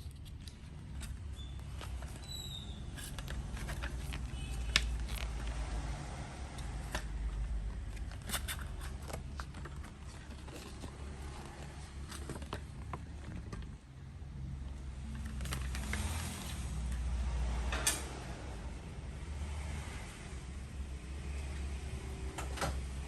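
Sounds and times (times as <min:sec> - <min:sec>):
wrapping rustling: 0:00.0 - 0:13.8.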